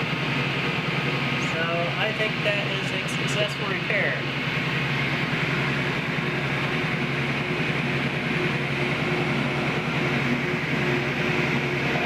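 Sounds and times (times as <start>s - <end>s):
washing machine spinning: 0.0s - 12.0s.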